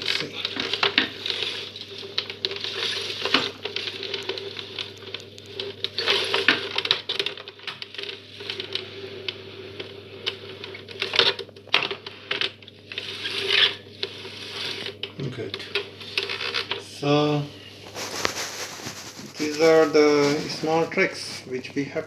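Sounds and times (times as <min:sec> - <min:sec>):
brush scrubbing surface: 0:17.8 - 0:21.9
cleaning brush clicking and rattling: 0:17.9 - 0:21.5.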